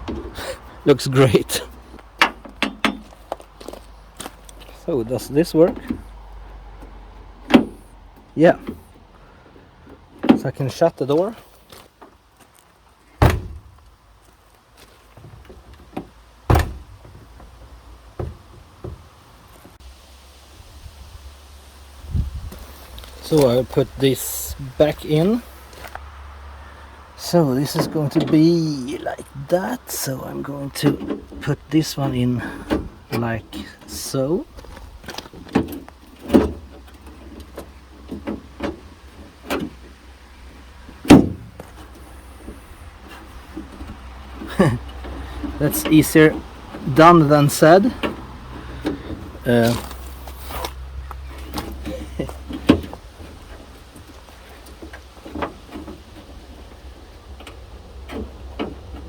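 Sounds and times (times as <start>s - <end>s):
knocks of parts fitted into car door: 2.2s - 3.2s, 13.2s - 13.8s, 15.2s - 17.5s, 35.1s - 38.8s, 41.0s - 41.8s
car door slamming: 7.4s - 7.8s, 13.2s - 13.8s, 15.2s - 19.1s, 41.0s - 41.8s.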